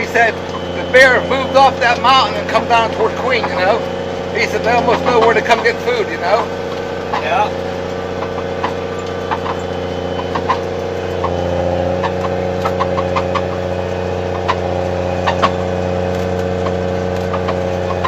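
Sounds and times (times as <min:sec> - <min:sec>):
snowcat engine droning: 0:00.0 - 0:18.0.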